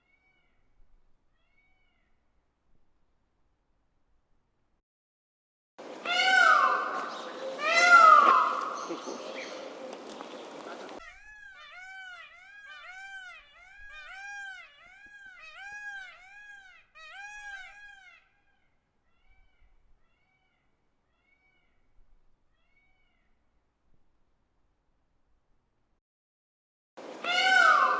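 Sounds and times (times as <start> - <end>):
peacock mewing calls: 5.8 - 18.3, 27.0 - 27.9.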